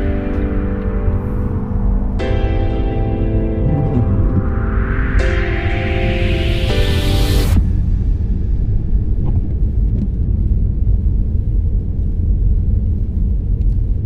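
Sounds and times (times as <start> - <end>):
car driving on snowy road: 0.0 - 5.2, 8.6 - 14.0
music: 0.0 - 11.0.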